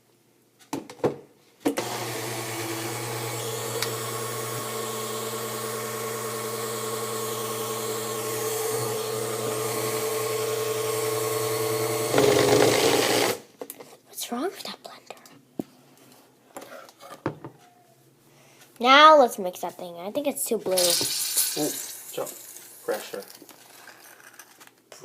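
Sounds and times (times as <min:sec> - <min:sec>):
blender motor whirring: 0:01.8 - 0:13.4, 0:20.8 - 0:23.0
blender switch click: 0:03.7 - 0:04.1.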